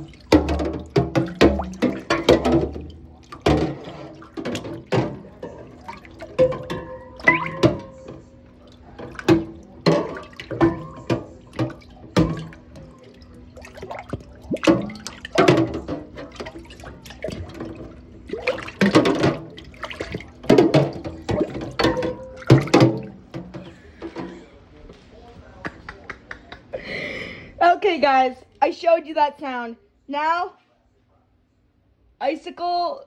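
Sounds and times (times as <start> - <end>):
dishes clanking in a sink: 0.0 - 24.6.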